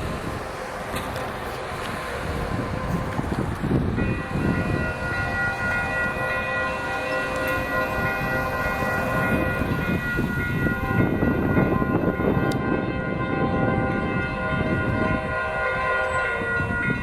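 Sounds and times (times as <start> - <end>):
locomotive air horn blast: 0.0 - 17.0
train rumbling: 0.0 - 17.0.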